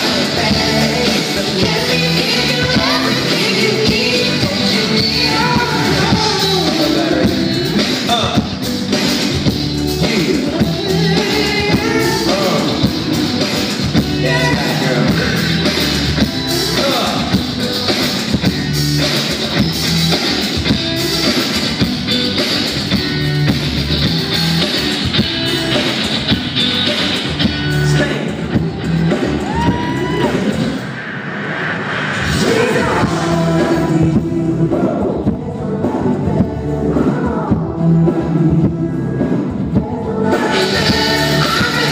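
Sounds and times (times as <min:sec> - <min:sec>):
man singing: 0:00.0 - 0:08.6, 0:09.9 - 0:15.6, 0:16.5 - 0:17.4, 0:32.4 - 0:41.9
pop backing track over pa: 0:00.0 - 0:41.9.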